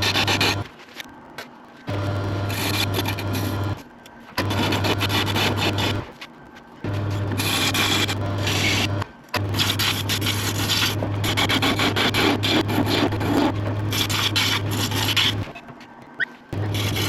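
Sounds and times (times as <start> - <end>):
lathe motor hum: 0.0 - 0.6, 1.9 - 6.2, 6.8 - 15.5, 16.4 - 17.0
sandpaper rubbing spinning wood: 0.0 - 0.7, 2.5 - 3.8, 4.4 - 6.1, 6.9 - 15.5, 16.3 - 17.0.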